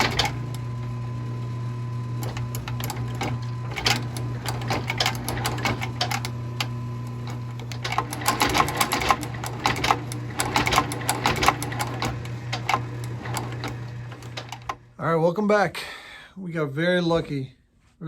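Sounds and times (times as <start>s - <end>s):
sewing machine stitching clicks: 0.0s - 0.6s, 2.2s - 14.9s.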